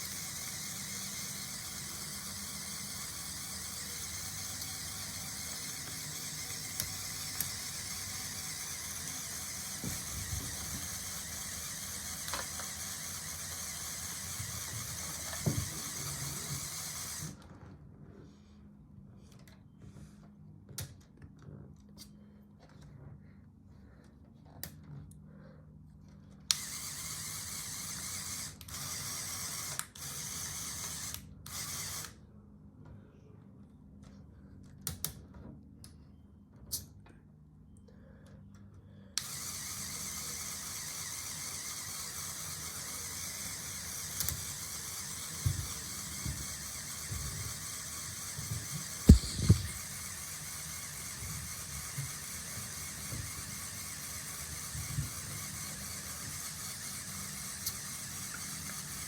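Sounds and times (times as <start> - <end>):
geared mechanism whirring: 0.0 - 17.4, 26.5 - 32.1, 39.2 - 59.0.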